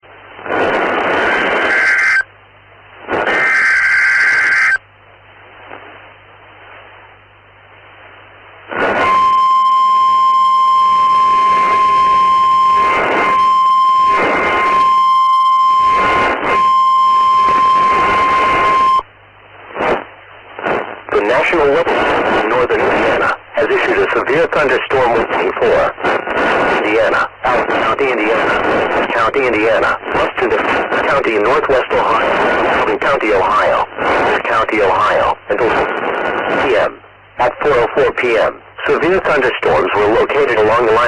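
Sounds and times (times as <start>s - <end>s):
reception static crackle: 0.0s - 41.0s
buzzing digital header data: 1.3s - 2.3s, 3.2s - 4.8s, 8.9s - 19.0s
steady weather-alert tone: 1.6s - 2.3s, 3.3s - 4.8s, 9.0s - 19.0s.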